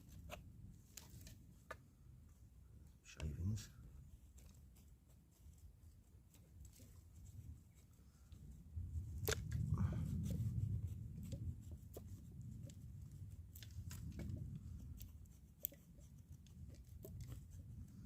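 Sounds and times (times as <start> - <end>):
low rumble: 8.4 - 15.0
knife scraping wood: 13.5 - 18.0.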